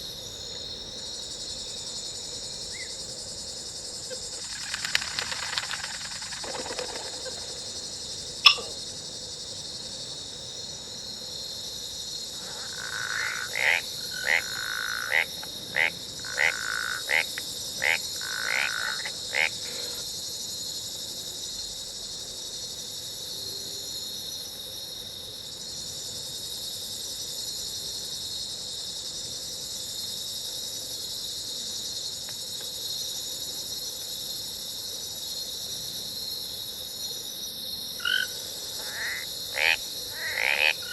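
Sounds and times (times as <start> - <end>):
high insect drone: 0.0 - 40.9
frog croaks: 8.4 - 8.9, 12.4 - 20.0, 38.0 - 40.9
sharp click: 8.5 - 8.7.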